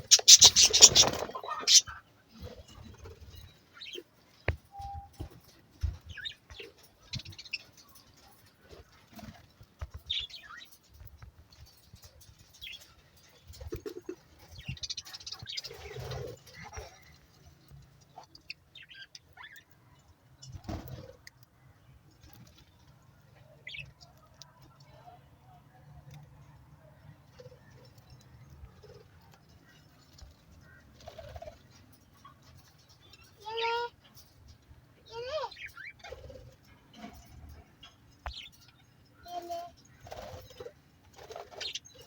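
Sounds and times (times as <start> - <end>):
budgerigars chirping: 0.0 - 2.0.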